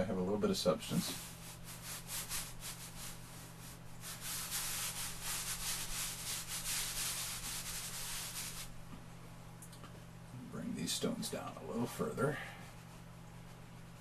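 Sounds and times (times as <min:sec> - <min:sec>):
chalk scratching on paper: 0:01.0 - 0:08.7.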